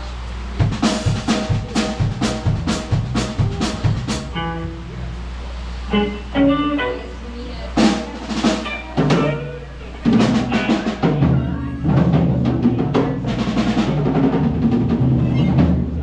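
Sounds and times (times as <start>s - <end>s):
steady low bass: 0.0s - 6.5s
bass drum and snare hits: 0.6s - 4.4s
live band playing: 0.6s - 5.2s, 5.9s - 16.0s.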